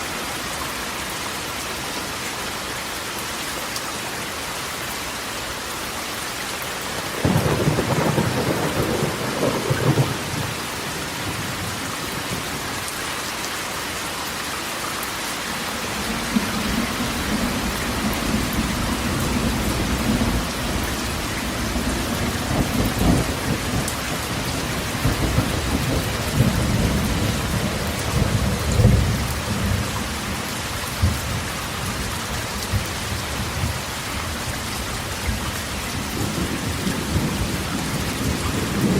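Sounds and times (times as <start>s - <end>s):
rain on a metal roof: 0.0s - 38.9s
thunder rumbling: 7.1s - 12.6s, 15.8s - 30.0s, 36.2s - 38.9s.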